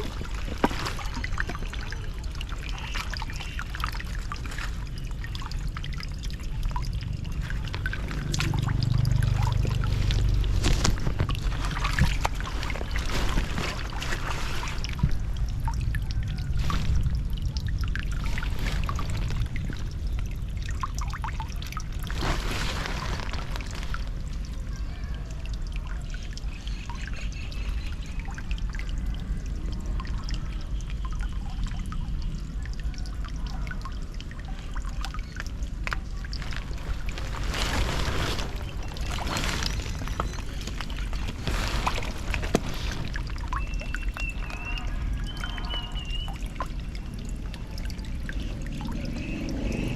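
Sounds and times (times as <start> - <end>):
short splashes: 0.0 - 24.5, 35.3 - 46.7
water gurgling down a drain: 0.0 - 49.9.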